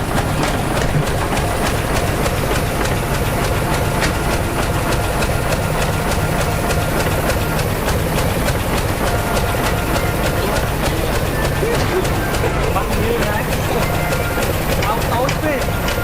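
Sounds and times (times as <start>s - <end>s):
bulldozer diesel engine running: 0.0s - 16.0s
steel tracks clattering: 0.0s - 16.0s.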